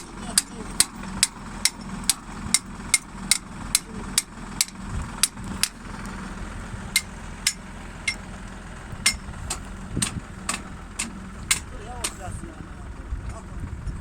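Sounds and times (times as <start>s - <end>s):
sharp regular clicks: 0.0s - 6.2s, 6.9s - 12.2s
engine hum: 0.0s - 14.0s.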